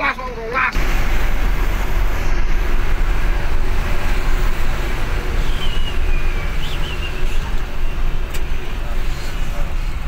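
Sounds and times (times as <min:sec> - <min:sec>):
bus rumble and road noise: 0:00.0 - 0:10.0.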